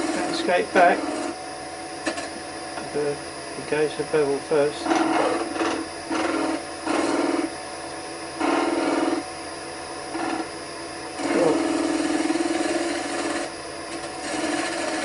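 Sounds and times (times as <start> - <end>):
lathe knife rasping on wood: 0.0 - 1.4, 4.7 - 7.5, 8.4 - 9.2, 10.1 - 10.5, 11.2 - 15.0.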